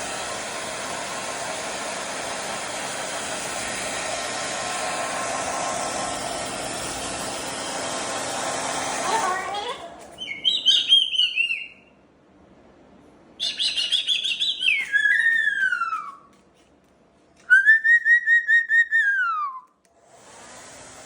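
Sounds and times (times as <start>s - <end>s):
hair dryer hiss: 0.0s - 10.2s, 19.9s - 21.0s
cockatoo whistle calls: 10.2s - 11.9s, 13.4s - 16.3s, 17.5s - 19.7s.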